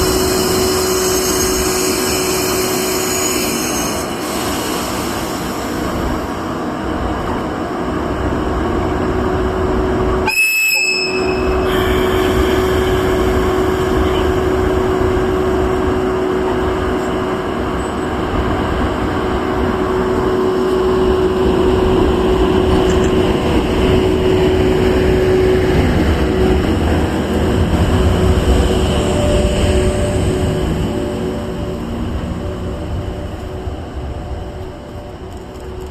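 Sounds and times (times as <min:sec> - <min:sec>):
train wheels and motors rumbling: 0:00.0 - 0:35.9
locomotive horn blast: 0:10.2 - 0:15.8.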